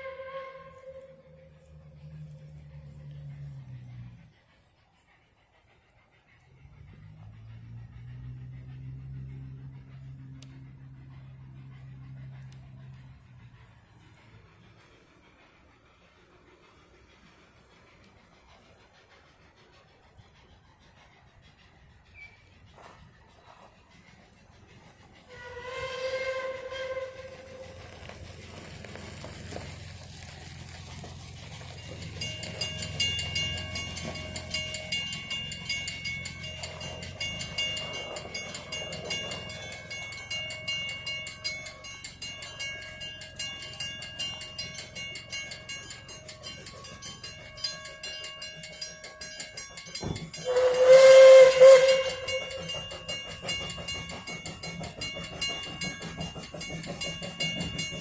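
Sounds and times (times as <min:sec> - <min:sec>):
steam whistle blast: 0:00.0 - 0:01.8, 0:25.3 - 0:27.8, 0:50.4 - 0:52.6
steam locomotive rumbling: 0:00.0 - 0:58.0
bell ringing rapidly: 0:31.8 - 0:58.0.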